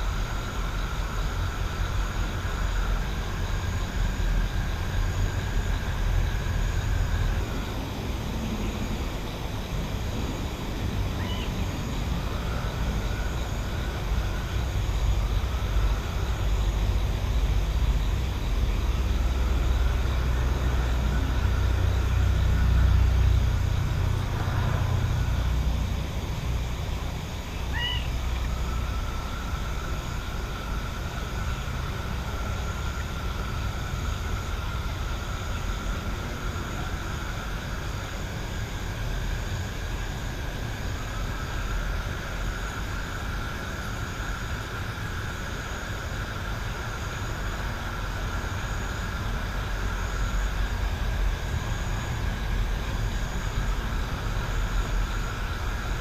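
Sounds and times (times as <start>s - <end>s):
distant engine rumble: 0.0s - 42.5s
night insects droning: 0.0s - 56.0s
bird chirp: 27.6s - 28.5s.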